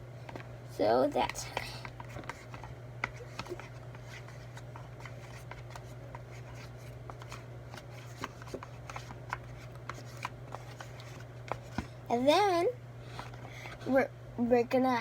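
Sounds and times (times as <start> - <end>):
steady low hum: 0.0 - 15.0
hands handling containers: 1.2 - 12.0.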